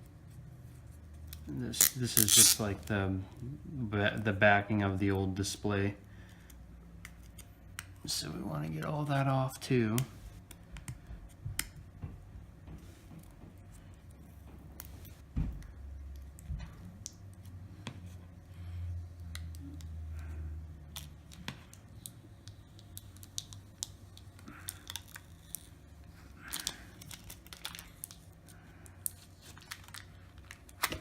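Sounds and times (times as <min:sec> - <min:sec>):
adhesive peeling scratchily: 0:01.7 - 0:02.8.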